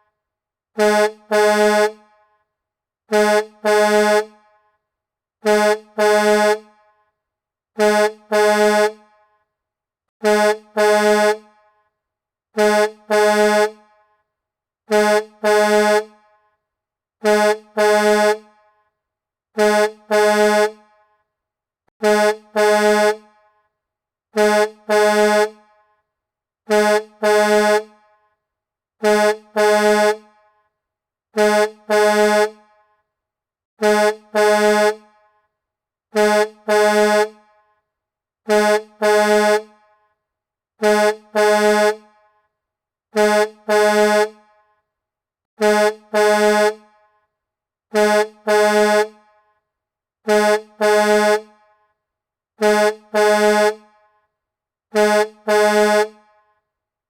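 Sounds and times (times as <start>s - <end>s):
truck horn honking: 0.8s - 2.0s, 3.1s - 4.4s, 5.4s - 6.7s, 7.8s - 9.0s, 10.2s - 11.5s, 12.6s - 13.8s, 14.9s - 16.2s, 17.2s - 18.5s, 19.6s - 20.8s, 22.0s - 23.3s, 24.4s - 25.6s, 26.7s - 28.0s, 29.0s - 30.3s, 31.4s - 32.6s, 33.8s - 35.1s, 36.1s - 37.4s, 38.5s - 39.7s, 40.8s - 42.1s, 43.1s - 44.4s, 45.6s - 46.9s, 47.9s - 49.2s, 50.2s - 51.5s, 52.6s - 53.8s, 54.9s - 56.2s.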